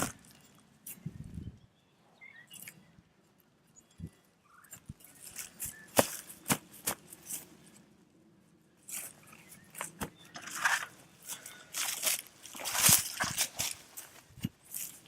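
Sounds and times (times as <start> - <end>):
rustling: 8.8 - 15.0.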